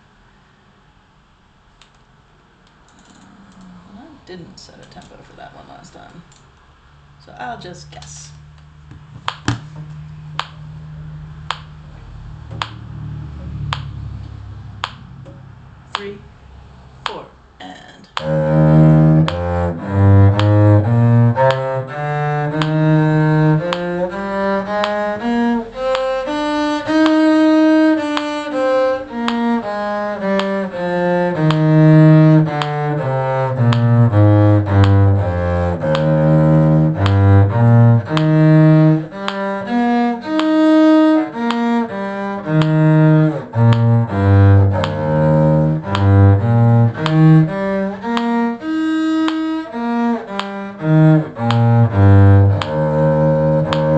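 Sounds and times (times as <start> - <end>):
bowed cello playing a scale: 18.2 - 53.9.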